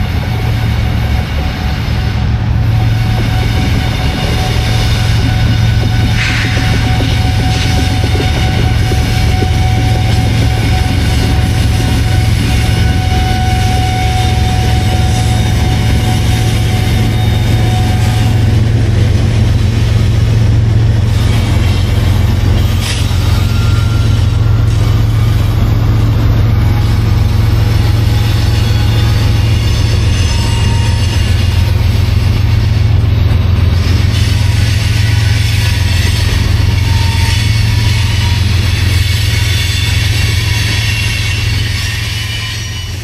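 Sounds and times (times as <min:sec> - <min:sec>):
diesel locomotive engine drone: 0:00.0 - 0:43.0
rail noise: 0:00.0 - 0:43.0.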